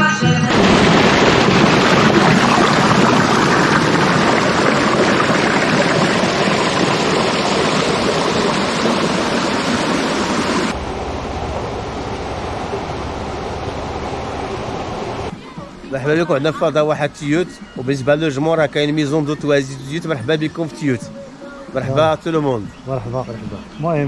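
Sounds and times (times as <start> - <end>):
low rumble: 0.5 - 15.3
water rushing: 0.5 - 15.3.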